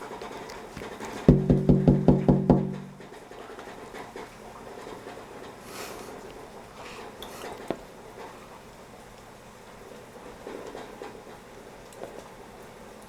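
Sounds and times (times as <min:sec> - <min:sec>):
hard knocks on hollow object: 0:01.3 - 0:03.1.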